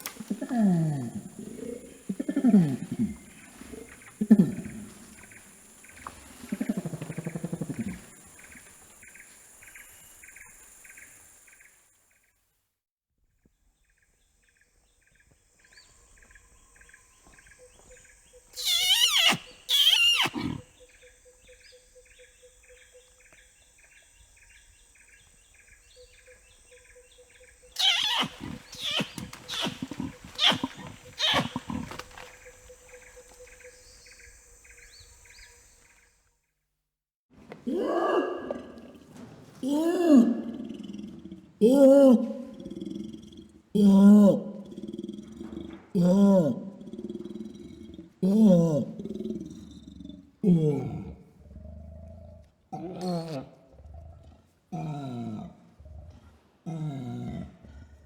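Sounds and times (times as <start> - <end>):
orangutan low call: 0.0 - 8.1, 18.5 - 20.9, 27.8 - 34.2, 37.6 - 57.6
insects chirping: 0.0 - 12.2, 14.2 - 36.2, 40.2 - 41.6, 42.2 - 43.8
orangutan kiss-squeaks: 18.6 - 20.6, 27.8 - 32.2.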